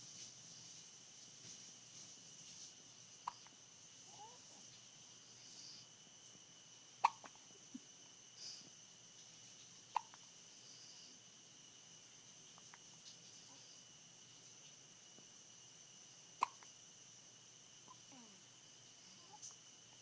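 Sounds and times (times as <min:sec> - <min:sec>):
person hiccuping: 0:07.0 - 0:07.3, 0:10.0 - 0:10.2, 0:16.4 - 0:16.6.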